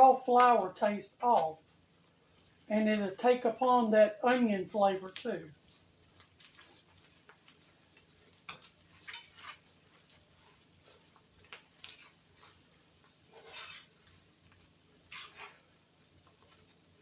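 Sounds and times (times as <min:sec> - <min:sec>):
utensil scraping a skillet: 0:05.6 - 0:17.0.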